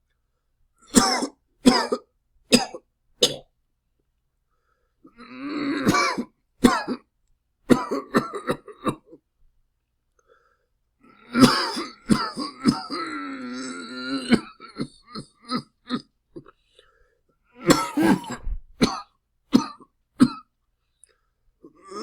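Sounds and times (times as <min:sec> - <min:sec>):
person coughing: 0:00.9 - 0:03.5, 0:05.8 - 0:07.0, 0:07.7 - 0:09.1, 0:11.4 - 0:13.0, 0:17.6 - 0:20.5
throat clearing: 0:17.6 - 0:20.5.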